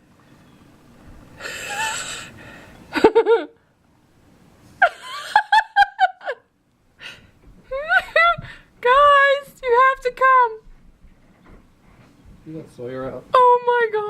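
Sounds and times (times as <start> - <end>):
woman laughing: 1.4 - 2.3, 2.9 - 3.6, 4.8 - 9.2.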